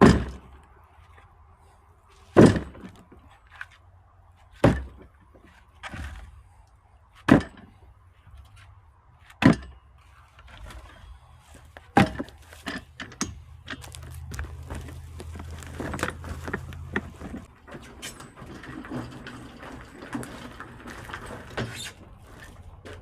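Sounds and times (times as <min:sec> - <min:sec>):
low steady hum: 0:00.0 - 0:23.0
axe strikes splitting wood: 0:11.9 - 0:12.4.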